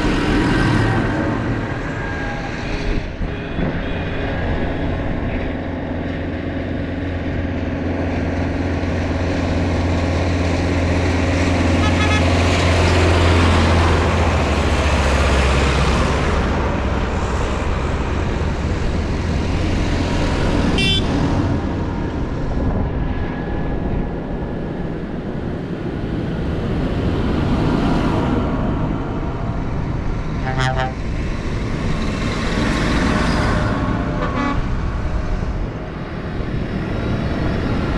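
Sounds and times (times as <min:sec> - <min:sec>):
diesel tractor engines driving past: 0:00.0 - 0:37.9
short horn toot: 0:30.4 - 0:31.0.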